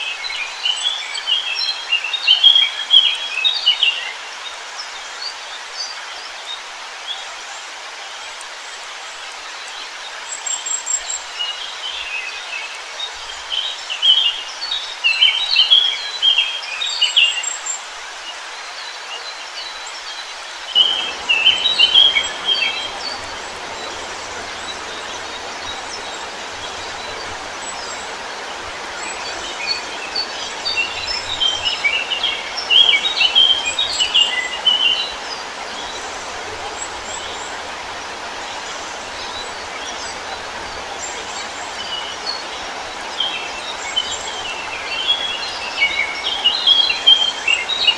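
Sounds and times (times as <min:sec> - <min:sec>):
songbirds chirping: 0:20.2 - 0:47.9
steady rushing hiss: 0:20.7 - 0:47.9.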